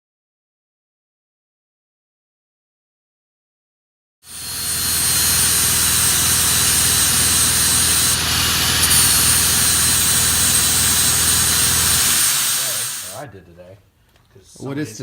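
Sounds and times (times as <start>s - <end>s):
machine hissing rush: 4.3s - 13.2s.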